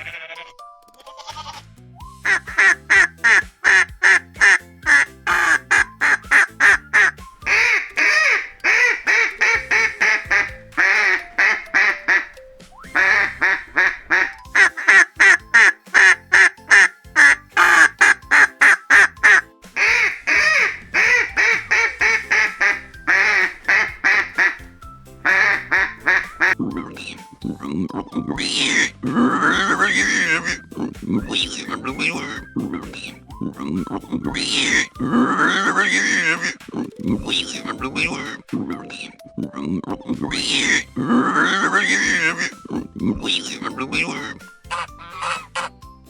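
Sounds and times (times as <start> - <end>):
background music: 0.0 - 46.0
duck quacking: 2.3 - 12.4, 13.0 - 26.6, 28.7 - 30.6, 41.4 - 42.6, 43.9 - 45.7.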